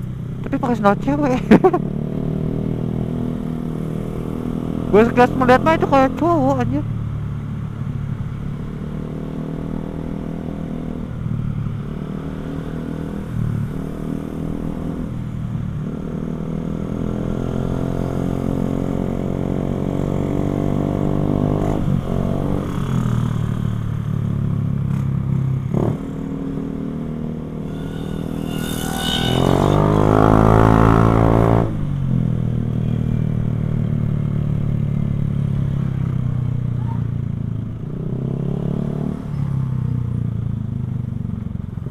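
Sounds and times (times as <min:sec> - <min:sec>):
motorcycle accelerating through gears: 0:00.0 - 0:41.9.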